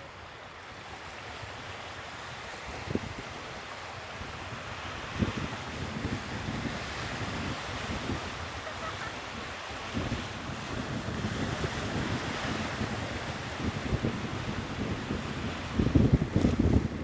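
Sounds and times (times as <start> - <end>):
sea waves washing on shore: 0.0 - 17.0
wind gusting against microphone: 2.4 - 17.0.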